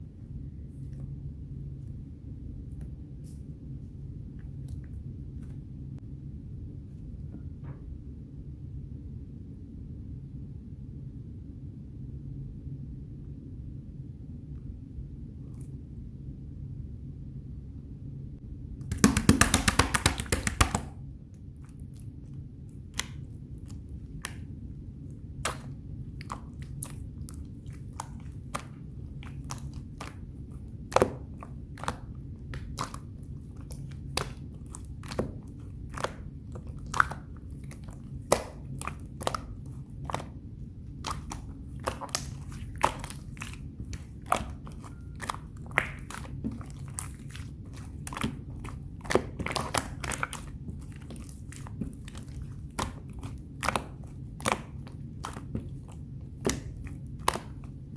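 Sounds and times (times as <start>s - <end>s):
slime squelching: 0.7s - 5.8s, 18.8s - 57.9s.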